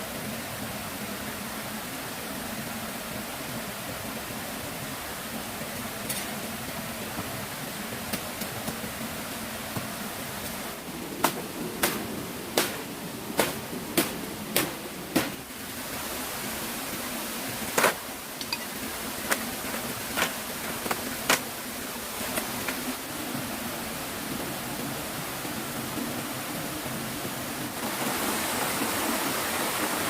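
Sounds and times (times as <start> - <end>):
steady rushing noise: 0.0 - 30.0
sharp knocks: 12.6 - 15.4.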